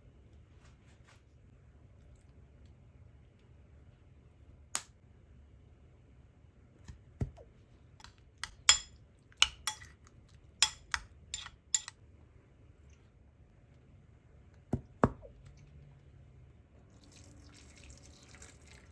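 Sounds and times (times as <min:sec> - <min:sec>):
kitchenware clinking: 0:08.0 - 0:10.0, 0:10.6 - 0:11.9.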